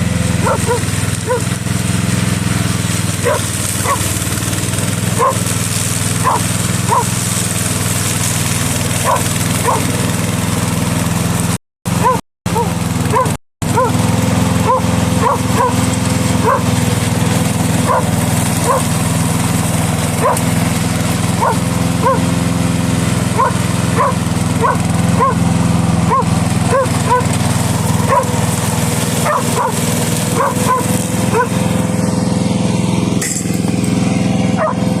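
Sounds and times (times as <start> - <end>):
lawn mower engine running: 0.0 - 35.0
dog barking: 0.4 - 1.5, 3.2 - 4.0, 5.2 - 5.4, 6.2 - 7.1, 9.0 - 10.0, 12.0 - 14.0, 14.6 - 15.8, 16.4 - 16.7, 17.9 - 18.9, 20.2 - 20.5, 21.4 - 22.3, 23.4 - 25.4, 26.1 - 27.3, 28.1 - 28.4, 29.2 - 31.6, 34.6 - 34.8.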